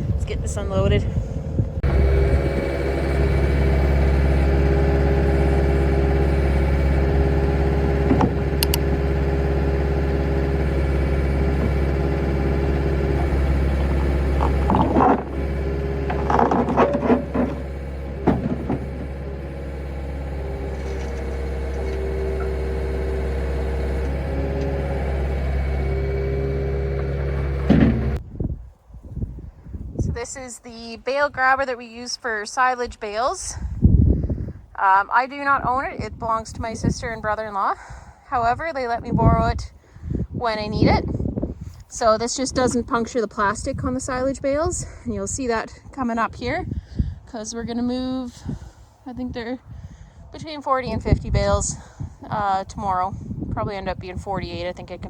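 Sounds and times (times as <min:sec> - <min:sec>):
skid steer engine running: 0:01.2 - 0:28.2, 0:34.2 - 0:55.0
metal clanks and clatter: 0:05.4 - 0:25.0.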